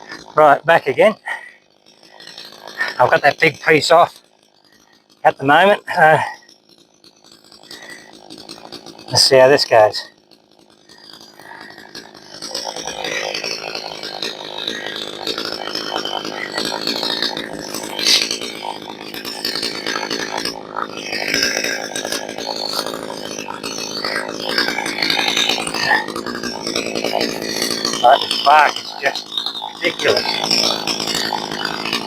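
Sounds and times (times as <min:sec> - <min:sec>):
chainsaw cutting log: 0:00.0 - 0:32.0.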